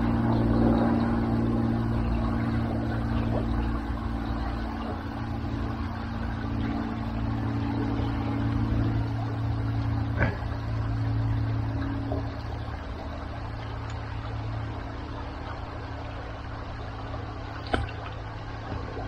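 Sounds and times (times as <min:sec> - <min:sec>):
continuous rushing noise: 0:00.0 - 0:19.0
low engine-like drone: 0:00.0 - 0:19.0.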